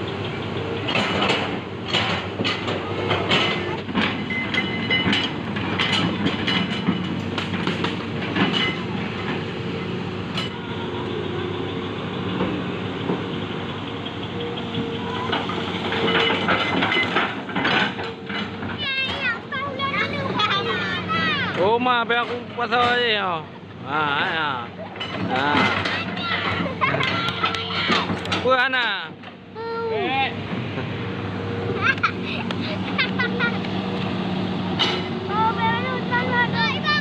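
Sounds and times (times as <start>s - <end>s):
excavator diesel engine running: 0.0s - 37.0s
metallic knocks and clanks: 0.7s - 9.4s, 14.0s - 19.4s, 24.9s - 29.4s.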